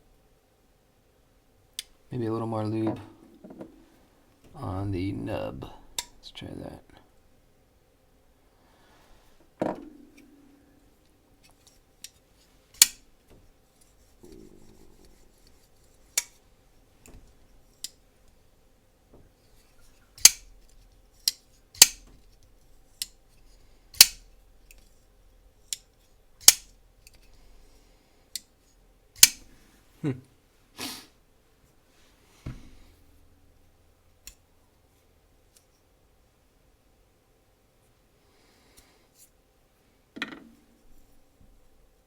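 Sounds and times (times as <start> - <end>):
folding knife clicking open and shut: 12.8 - 13.0, 20.2 - 20.5, 21.2 - 22.1, 24.0 - 24.3, 25.7 - 27.2, 29.2 - 29.4.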